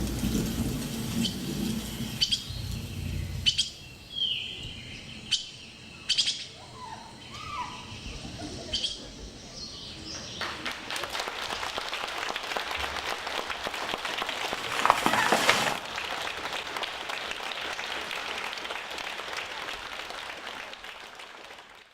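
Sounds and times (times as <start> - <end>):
audience applauding: 10.4 - 21.9.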